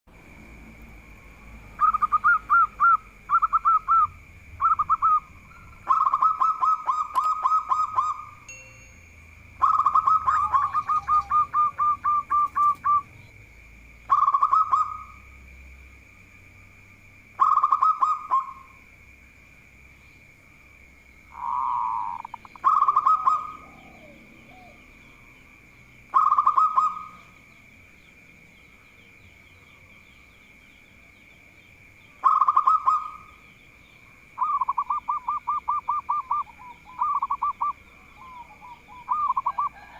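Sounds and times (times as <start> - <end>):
dove cooing: 1.8 - 8.4, 9.6 - 13.3, 14.1 - 15.2, 17.4 - 18.8, 21.3 - 25.1, 26.1 - 27.4, 32.2 - 33.3, 34.4 - 39.9.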